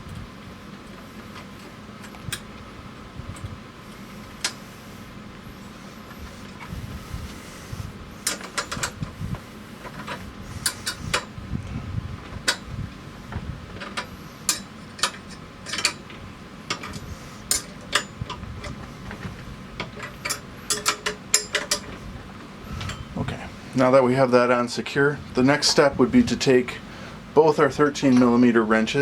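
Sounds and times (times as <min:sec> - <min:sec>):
steel wrenches clinking on bolt: 0:13.8 - 0:16.0, 0:20.0 - 0:22.0.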